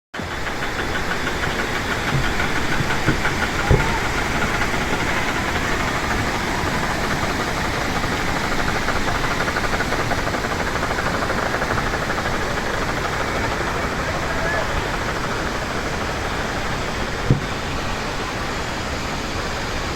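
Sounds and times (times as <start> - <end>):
fast rhythmic patter: 0.2 - 17.8
stream and waterfall flowing: 0.2 - 19.9
short knocks: 0.4 - 7.4, 17.2 - 17.9.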